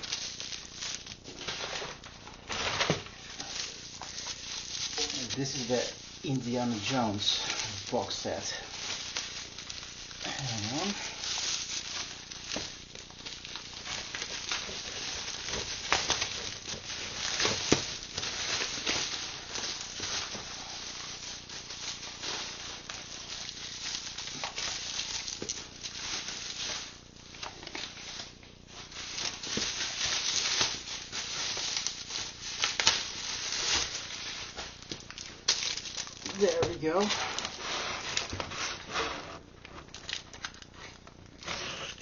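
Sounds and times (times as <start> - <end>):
plastic packaging crinkling: 0.0 - 42.0.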